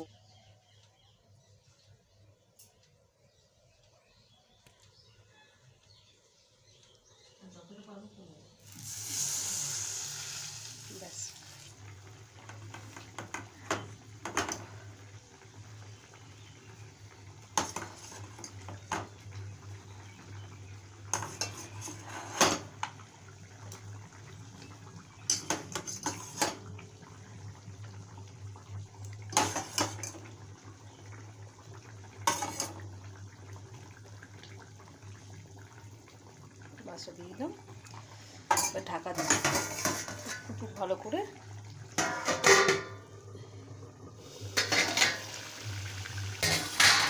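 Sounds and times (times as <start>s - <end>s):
metal utensil scraping a pan: 21.1s - 22.7s, 25.3s - 26.6s, 29.3s - 30.2s, 32.3s - 32.8s, 38.5s - 40.7s, 42.0s - 43.0s, 44.5s - 45.4s, 46.4s - 47.0s.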